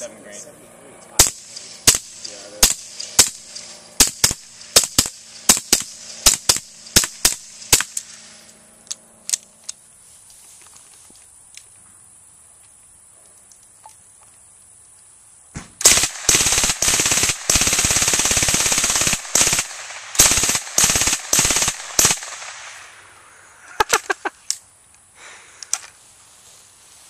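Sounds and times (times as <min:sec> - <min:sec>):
automatic gunfire bursts: 0:01.2 - 0:08.2, 0:15.8 - 0:22.8.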